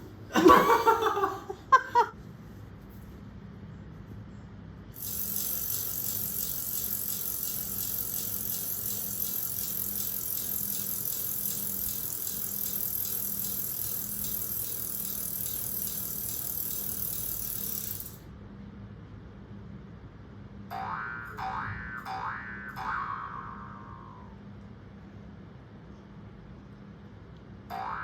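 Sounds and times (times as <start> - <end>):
high-pitched rattling hiss: 5.0 - 18.2.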